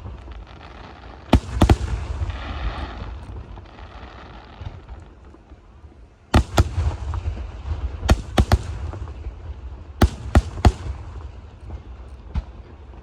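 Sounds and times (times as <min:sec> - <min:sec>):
firework shells bursting: 0:08.1 - 0:09.1.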